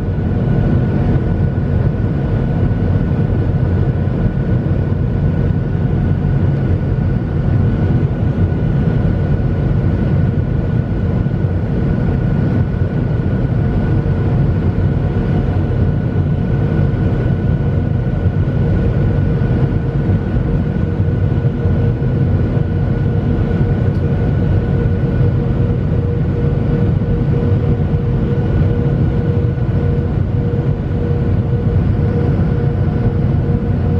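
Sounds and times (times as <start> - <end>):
jet engine and airflow drone: 0.0 - 33.9
thin steady whine: 11.1 - 33.9.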